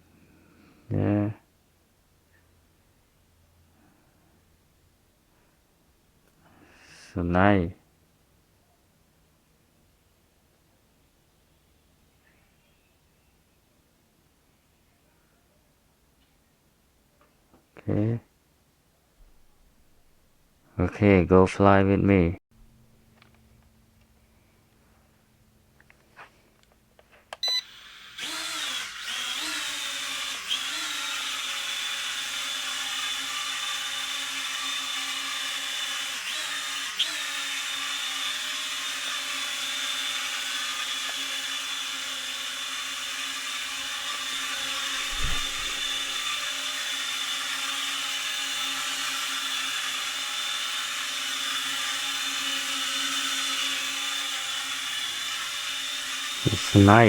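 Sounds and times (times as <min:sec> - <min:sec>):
toy drone buzzing whine: 0:27.4 - 0:57.0.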